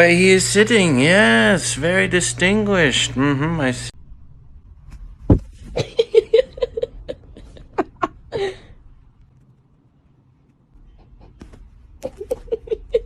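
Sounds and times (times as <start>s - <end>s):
person laughing: 5.7s - 8.7s, 10.9s - 13.0s.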